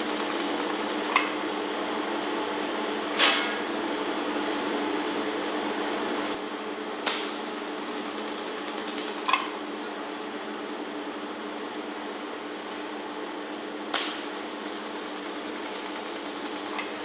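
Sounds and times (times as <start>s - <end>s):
welding machine humming: 0.0s - 1.9s, 7.0s - 9.8s, 14.0s - 17.0s
faint fast regular ticking: 7.4s - 9.3s.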